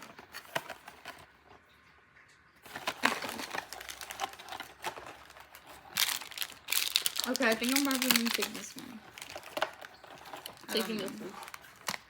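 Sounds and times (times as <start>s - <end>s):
wrappers crinkling: 0.0s - 1.3s, 2.6s - 12.0s
light clicks of packages: 2.7s - 12.0s.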